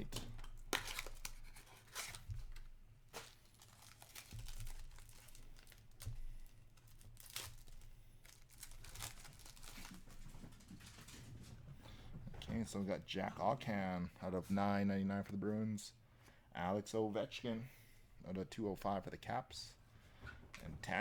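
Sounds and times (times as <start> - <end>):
cards rustling: 0.0 - 10.2
wrapping crinkling and tearing: 0.0 - 10.3.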